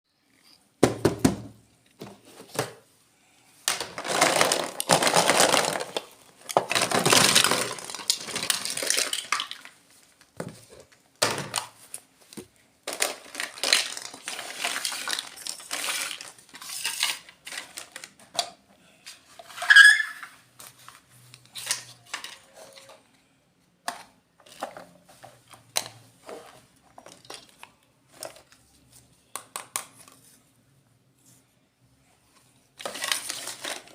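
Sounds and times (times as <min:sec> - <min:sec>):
packaging rustling: 0:03.7 - 0:18.2, 0:32.8 - 0:33.9.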